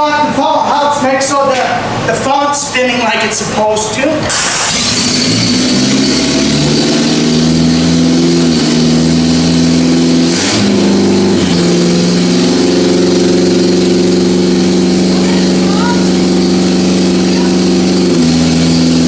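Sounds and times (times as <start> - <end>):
loud car engine running: 0.0 - 19.0.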